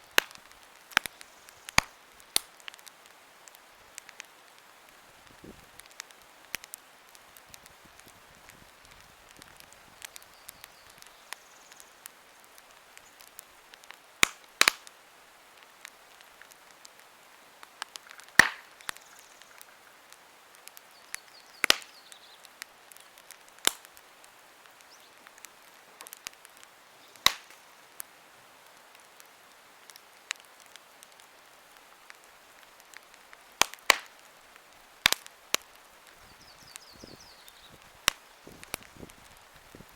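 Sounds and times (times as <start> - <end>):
campfire crackling: 0.0 - 39.9
loud sharp pops of fire: 0.0 - 39.9.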